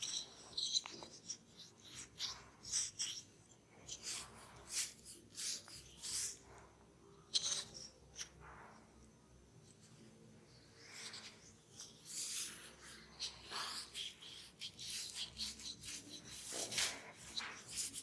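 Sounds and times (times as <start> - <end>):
fingers rubbing through hair: 10.9 - 18.0.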